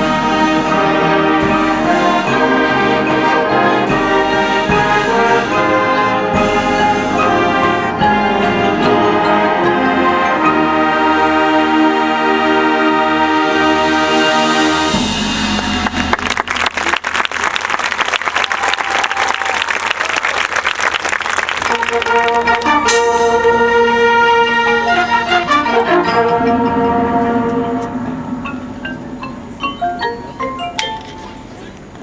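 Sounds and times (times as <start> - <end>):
marching band brass chords: 0.0 - 19.1, 20.7 - 29.8
crowd applause: 15.5 - 23.0.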